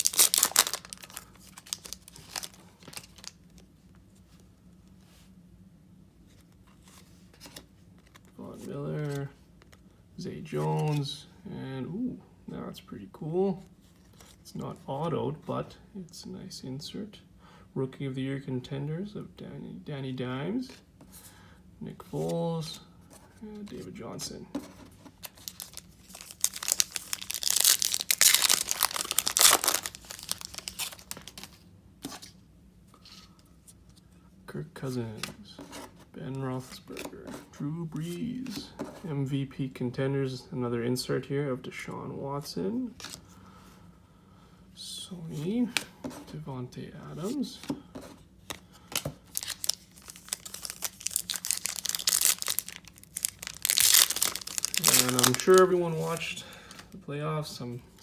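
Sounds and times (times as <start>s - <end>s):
plastic wrapper tearing and crinkling: 0.0s - 3.6s, 25.2s - 31.6s, 49.0s - 56.3s.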